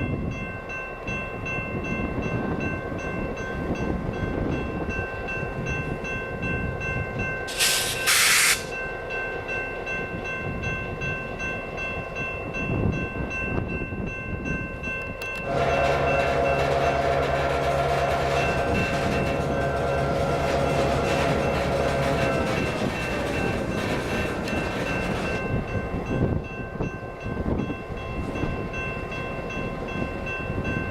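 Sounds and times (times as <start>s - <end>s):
diesel locomotive running: 1.8s - 30.9s
short hisses: 7.5s - 8.7s.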